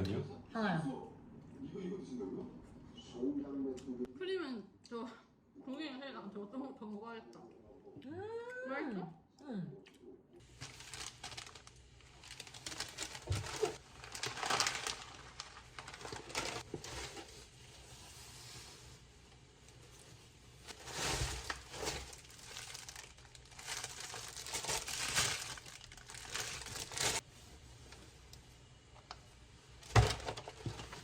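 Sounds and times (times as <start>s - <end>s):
packaging crinkling and rustling: 10.4s - 27.2s, 29.8s - 31.0s.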